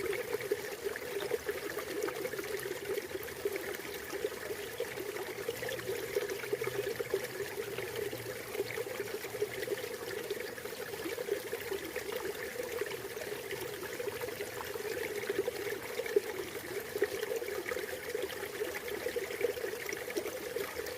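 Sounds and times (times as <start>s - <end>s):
river water flowing over rocks: 0.0s - 20.9s.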